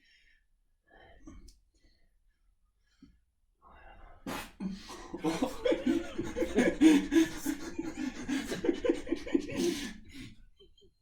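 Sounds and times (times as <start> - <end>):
laughter: 4.6 - 11.0.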